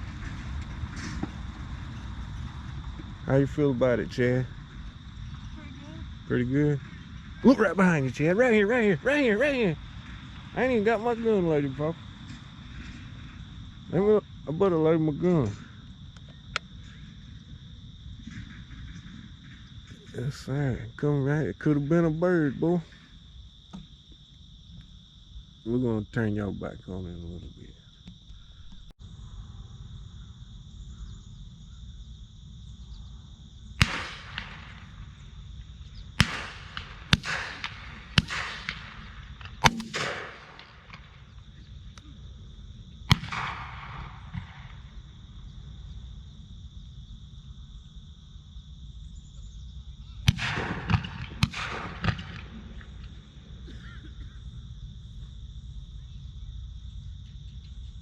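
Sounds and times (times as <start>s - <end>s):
insects trilling: 0.0s - 58.0s
shotgun shots with echo: 33.8s - 35.2s, 36.2s - 41.4s, 43.1s - 45.0s, 50.3s - 53.1s.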